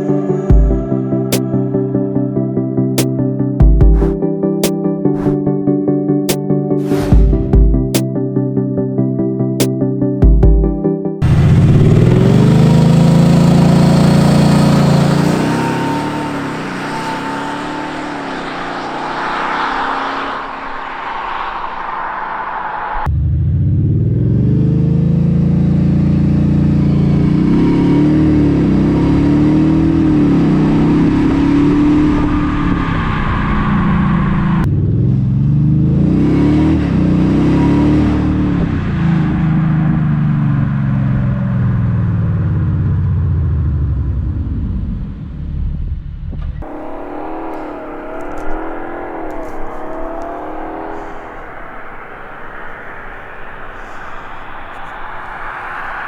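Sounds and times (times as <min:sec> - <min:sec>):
higher wavering engine tone: 0:11.2 - 0:34.7, 0:46.6 - 0:56.0
car engine accelerating hard: 0:11.2 - 0:56.0.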